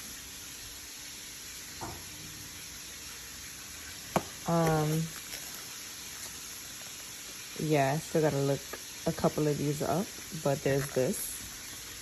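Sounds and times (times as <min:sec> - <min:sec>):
steady background hiss: 0:00.0 - 0:12.0.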